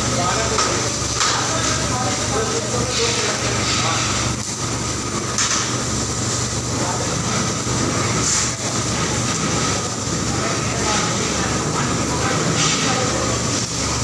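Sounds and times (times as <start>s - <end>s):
factory machinery hum: 0.0s - 14.0s.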